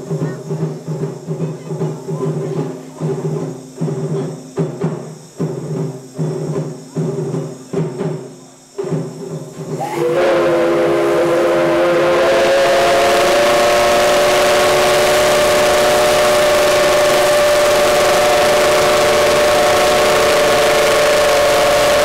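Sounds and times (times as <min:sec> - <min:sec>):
steam locomotive whistle: 0:09.7 - 0:22.0.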